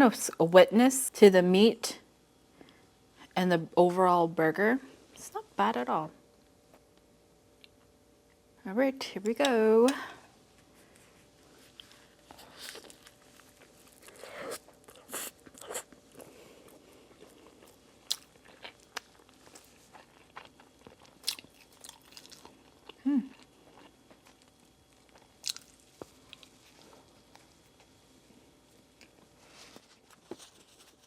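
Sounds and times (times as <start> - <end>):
person chewing food: 11.0 - 27.9.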